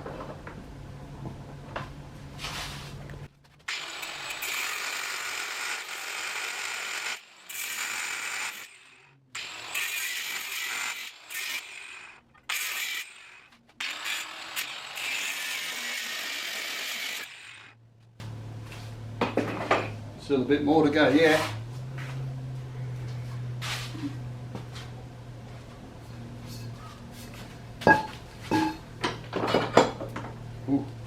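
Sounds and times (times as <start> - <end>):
angle grinder cutting steel tube: 3.7 - 17.8.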